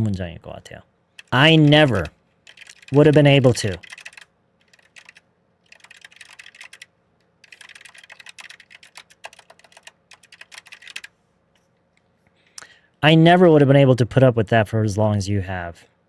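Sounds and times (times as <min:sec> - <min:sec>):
computer keyboard typing: 0:01.2 - 0:11.1.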